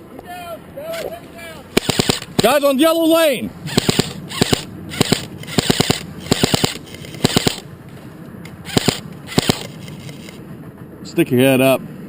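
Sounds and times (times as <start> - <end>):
airsoft rifle firing bursts: 1.7 - 2.6, 3.7 - 7.6, 8.7 - 9.8.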